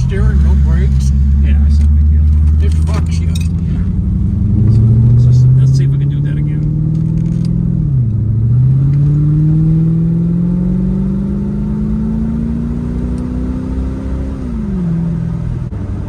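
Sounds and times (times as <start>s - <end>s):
car engine accelerating: 0.0s - 16.0s.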